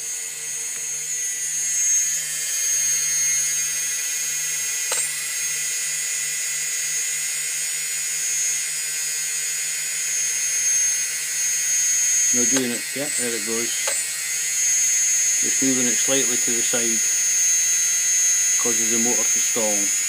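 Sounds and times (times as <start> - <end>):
electric motor whining: 0.0 - 20.0
single click: 4.9 - 5.1.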